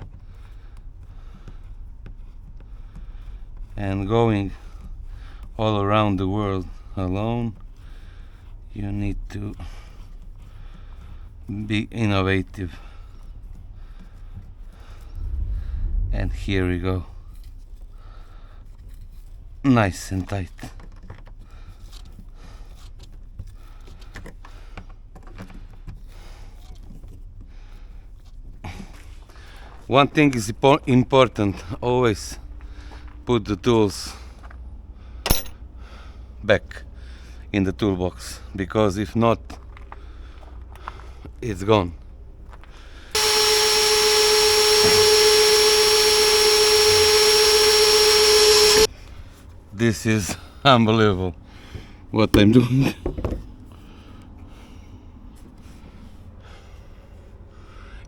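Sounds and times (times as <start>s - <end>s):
electric power tool whining: 43.2s - 48.9s.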